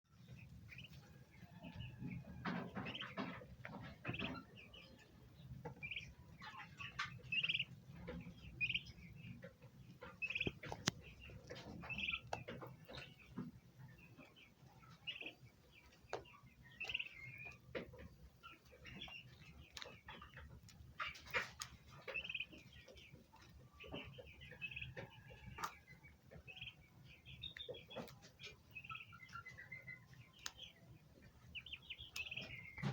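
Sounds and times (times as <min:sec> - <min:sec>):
turkey poults peeping: 0:00.1 - 0:32.9
turkey hen calling: 0:00.2 - 0:13.4.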